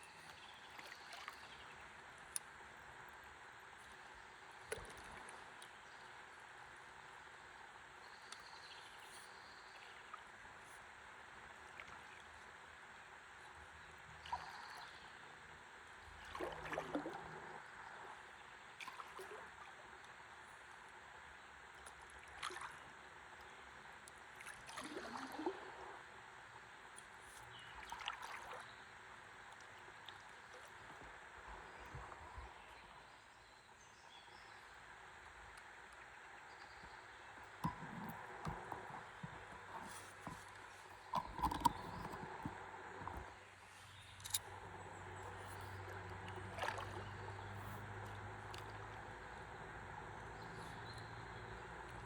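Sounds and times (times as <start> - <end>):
soft water hiss: 0.0 - 52.0
paddle splashing in water: 16.2 - 17.6, 22.2 - 22.8, 24.3 - 25.8, 27.5 - 28.8, 37.4 - 44.4, 45.2 - 49.1.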